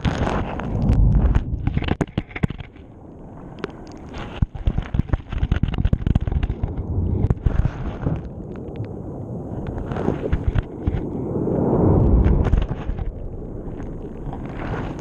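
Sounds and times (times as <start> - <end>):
underwater rumble of moving water: 0.0 - 15.0.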